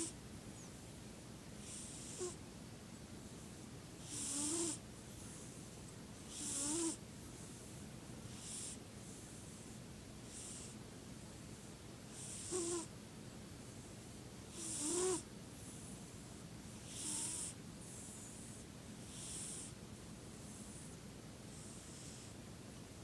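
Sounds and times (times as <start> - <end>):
pet snoring: 1.6 - 2.4, 4.0 - 5.5, 6.2 - 7.0, 8.3 - 8.8, 10.3 - 10.8, 12.2 - 12.9, 14.5 - 15.3, 16.8 - 19.8, 21.5 - 22.3.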